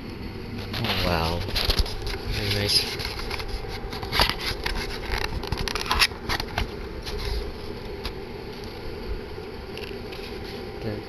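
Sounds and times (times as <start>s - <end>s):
camera handling clicks and rustles: 3.0s - 7.2s.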